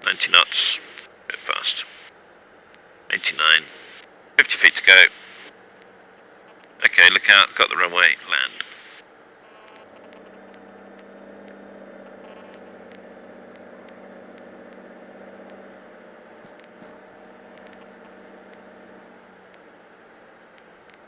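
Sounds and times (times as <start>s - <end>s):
aircraft engine drone: 9.7s - 21.0s.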